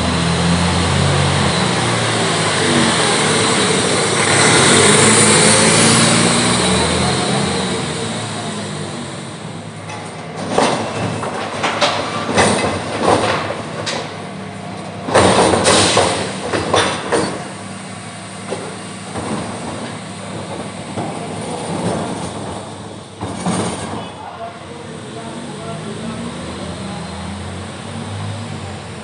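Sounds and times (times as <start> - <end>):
garbage truck engine hum: 0.0 - 29.0
metallic clanks and bangs: 9.8 - 17.6, 18.5 - 24.2.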